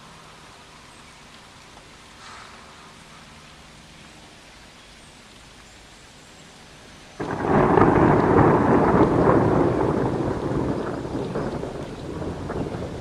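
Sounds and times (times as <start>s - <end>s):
faint hiss of rain: 0.0s - 13.0s
thunder clap and rumble: 7.2s - 13.0s.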